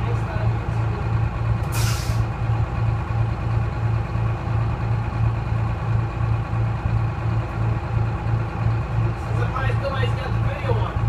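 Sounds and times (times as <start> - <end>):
diesel bus engine idling: 0.0 - 11.0.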